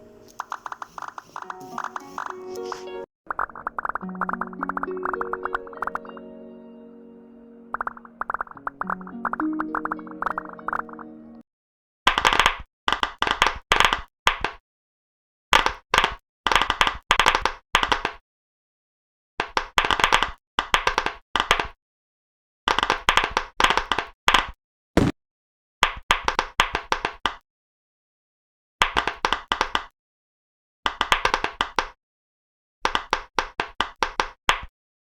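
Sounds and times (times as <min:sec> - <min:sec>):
fidget toy bubbles popping: 0:03.3 - 0:06.0, 0:07.7 - 0:11.1.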